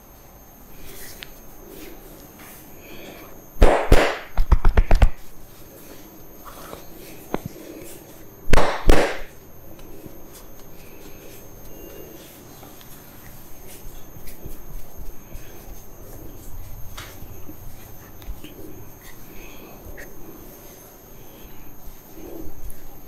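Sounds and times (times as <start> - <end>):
hand slaps on head: 8.6 - 9.3.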